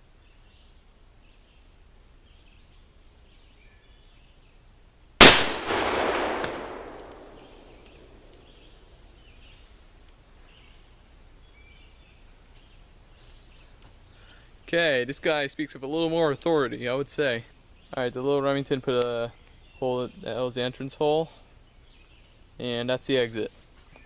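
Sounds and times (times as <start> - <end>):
revolver shot: 5.2 - 8.5.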